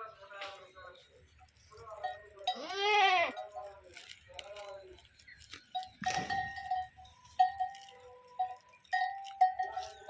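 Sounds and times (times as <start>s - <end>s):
animal neck bells clanking: 0.9s - 10.0s.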